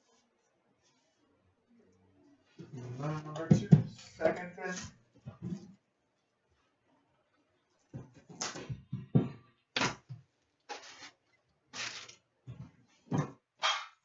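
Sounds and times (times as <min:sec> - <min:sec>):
card packs rustling: 0:10.7 - 0:11.2, 0:11.8 - 0:12.2.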